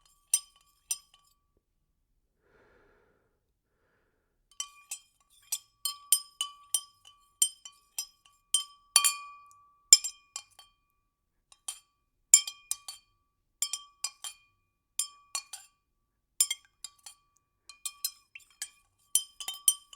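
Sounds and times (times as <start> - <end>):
spoon clinking in glass: 16.4 - 19.9.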